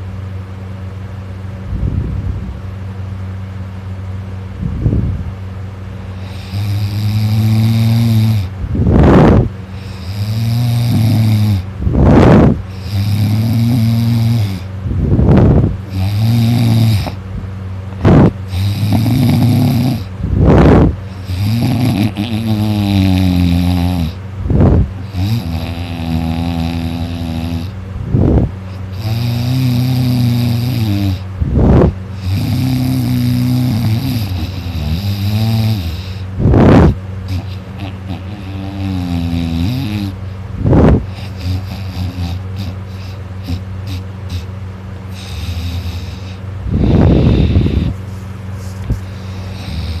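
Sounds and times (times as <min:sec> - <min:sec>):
person snoring loudly: 0:06.2 - 0:17.2, 0:18.0 - 0:44.5, 0:45.1 - 0:48.0, 0:49.0 - 0:50.0.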